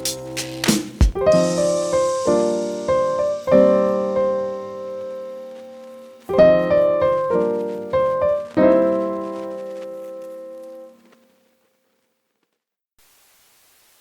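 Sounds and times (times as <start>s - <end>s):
slow piano chords: 0.0s - 11.2s.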